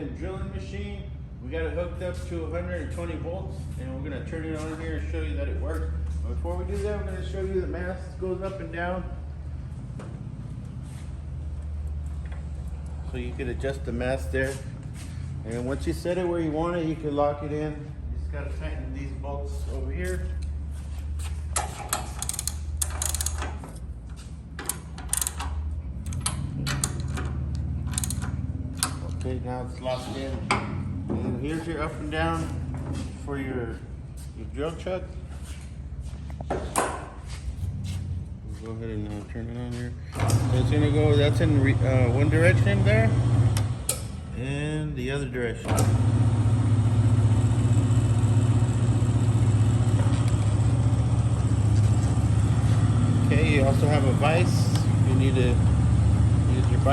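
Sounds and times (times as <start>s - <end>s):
steady low hum: 0.0s - 56.9s
ratchet wrench clicking: 21.6s - 23.8s, 24.7s - 29.2s
electric motor humming: 40.2s - 43.9s, 45.8s - 56.9s.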